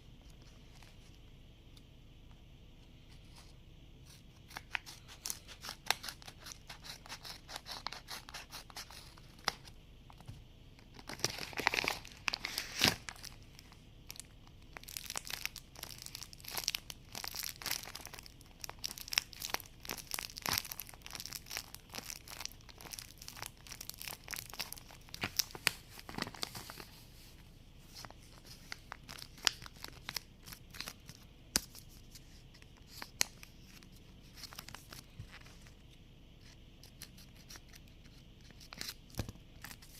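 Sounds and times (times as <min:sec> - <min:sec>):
paper and tape crinkling and tearing: 0:10.9 - 0:13.4.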